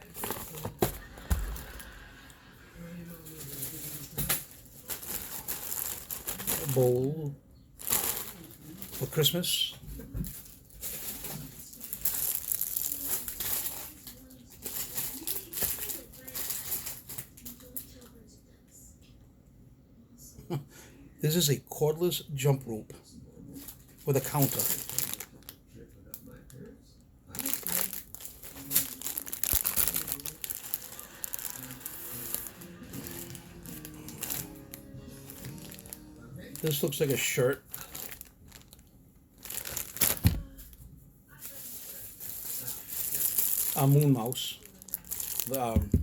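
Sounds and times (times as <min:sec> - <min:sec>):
packaging crinkling: 0:00.0 - 0:02.2, 0:03.4 - 0:07.2, 0:07.8 - 0:17.9, 0:23.6 - 0:25.6, 0:27.3 - 0:40.8, 0:41.4 - 0:46.0
faint music: 0:00.0 - 0:46.0.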